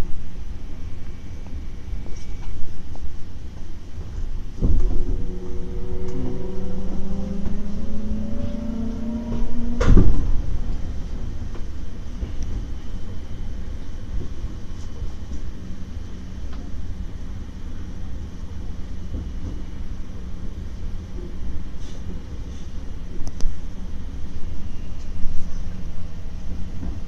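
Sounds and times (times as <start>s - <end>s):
train wheels rumbling on rails: 0.0s - 27.0s
train motor whine: 4.6s - 11.6s
loud thump: 9.6s - 10.4s.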